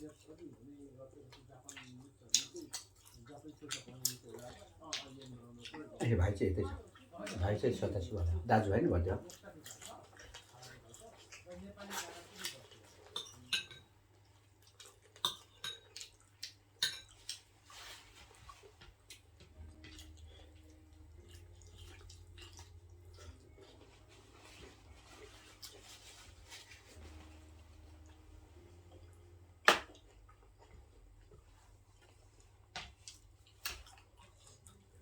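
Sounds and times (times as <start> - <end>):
cutlery clinking against plates: 11.3 - 13.9, 14.8 - 18.0.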